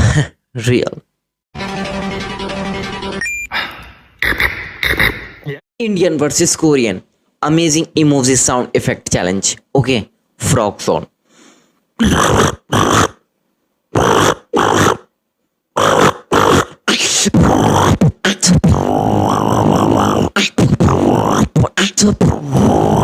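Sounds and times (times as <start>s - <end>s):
person imitating frog croaks: 12.0s - 13.2s, 13.9s - 15.1s, 15.8s - 23.0s.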